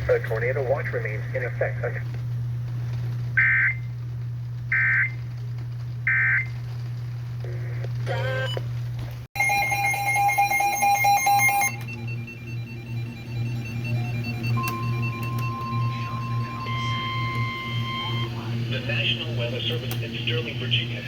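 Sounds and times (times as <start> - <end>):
radio steady hum: 0.0 - 4.1, 7.4 - 8.6, 11.7 - 21.0
electronic beeping tones: 9.4 - 18.6
warbling digital data tones: 9.4 - 19.0.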